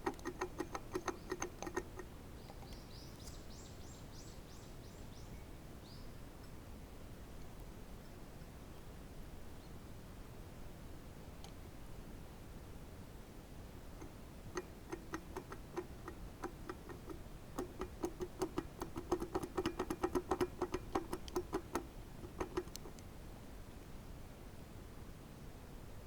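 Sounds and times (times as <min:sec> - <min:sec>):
engine crank clicking knocks: 0:00.0 - 0:02.8, 0:14.0 - 0:23.0.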